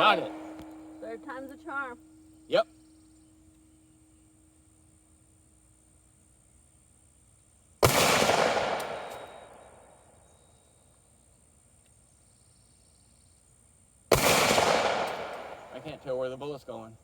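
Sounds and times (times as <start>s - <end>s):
pistol shots with echo: 0.0s - 1.0s, 7.8s - 9.9s, 14.1s - 16.3s.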